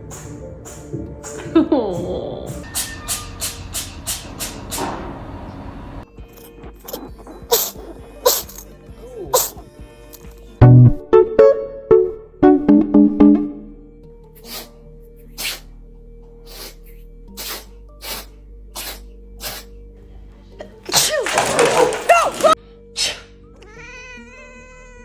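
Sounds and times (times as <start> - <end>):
quiet background music: 0.0 - 3.8, 6.0 - 25.0
cat sneezing: 6.9 - 9.6, 14.4 - 15.7, 16.5 - 19.8, 23.0 - 23.4.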